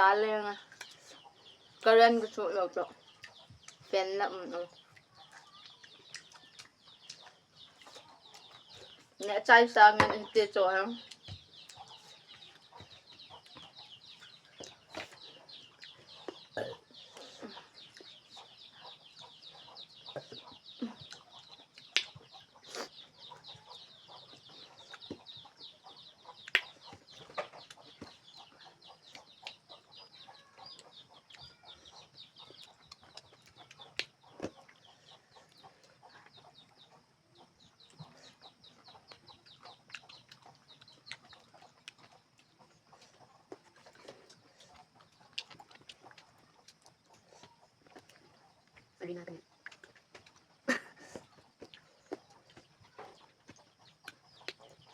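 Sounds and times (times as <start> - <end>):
birds chirping: 0.0 - 54.9
person eating fruit: 4.8 - 9.2, 20.1 - 23.7, 37.8 - 54.9.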